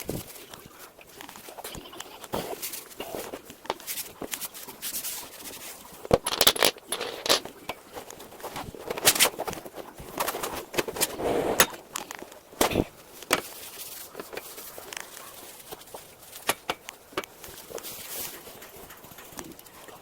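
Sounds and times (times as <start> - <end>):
tools clicking and knocking: 6.1 - 9.6, 16.4 - 19.8
short scrape: 11.0 - 11.8.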